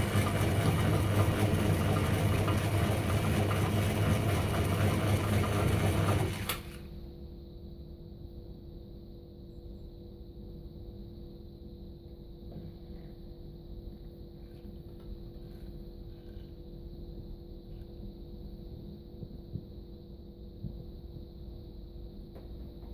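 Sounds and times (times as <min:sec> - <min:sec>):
lathe running hum: 0:00.0 - 0:06.9.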